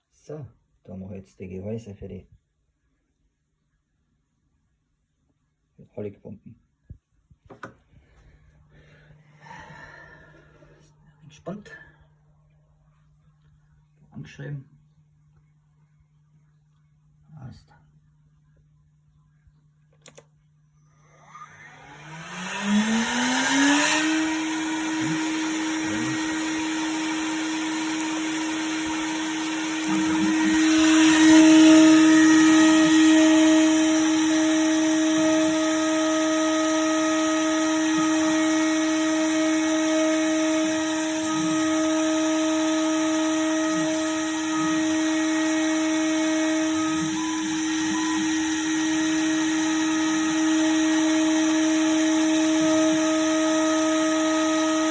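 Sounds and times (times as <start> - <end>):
milling machine spindle whine: 20.9 - 54.9
cutter milling brass: 21.0 - 54.9.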